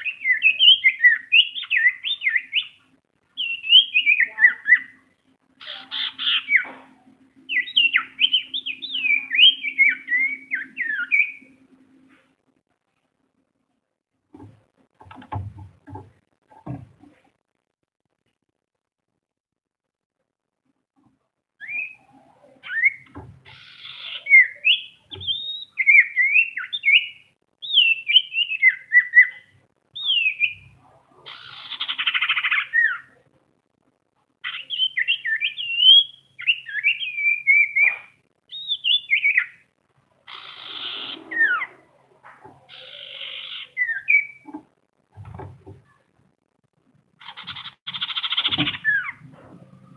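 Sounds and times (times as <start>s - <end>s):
bird harsh rasping chatter: 5.6s - 6.6s, 31.2s - 32.9s, 40.3s - 44.6s, 47.2s - 49.2s.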